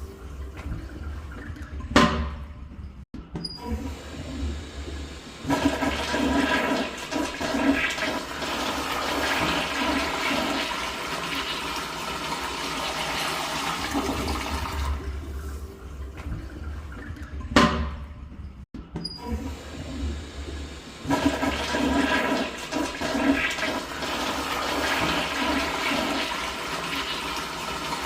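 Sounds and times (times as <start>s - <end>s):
toilet flushing: 3.6s - 18.2s, 19.2s - 28.0s.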